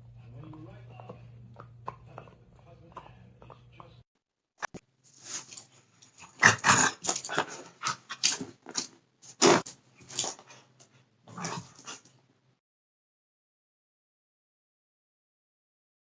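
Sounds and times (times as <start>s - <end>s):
dog growling: 5.2s - 12.2s.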